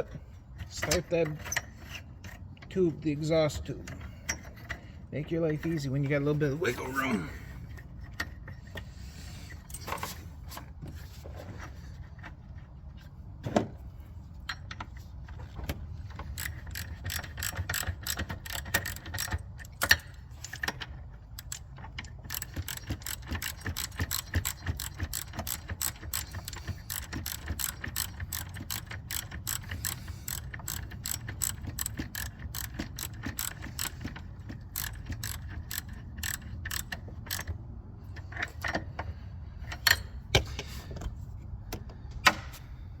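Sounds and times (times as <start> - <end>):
ratchet wrench clicking: 16.2 - 37.6.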